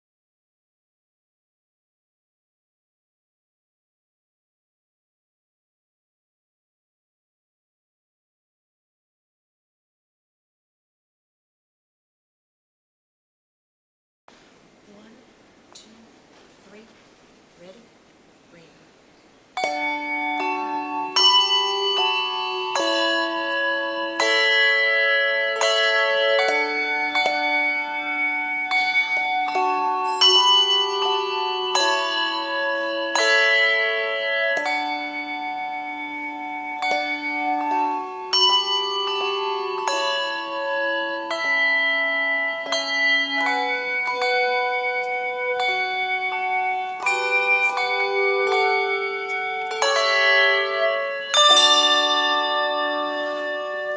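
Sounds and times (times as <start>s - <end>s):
handbell choir playing chords: 19.5s - 53.9s.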